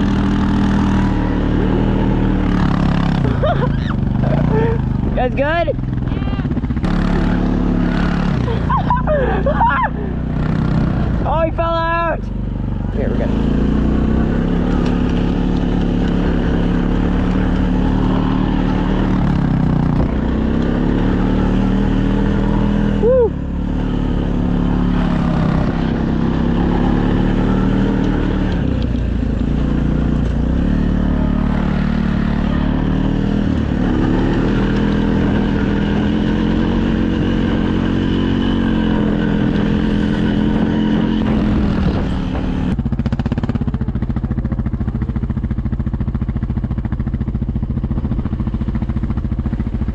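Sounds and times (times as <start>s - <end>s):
vehicle engine revving: 0.0s - 49.9s
person shouting woo: 23.0s - 23.4s.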